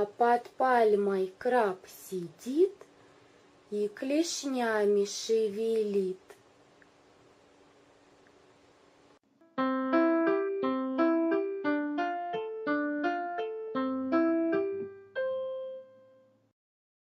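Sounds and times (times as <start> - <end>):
piano tune: 9.3 - 16.4.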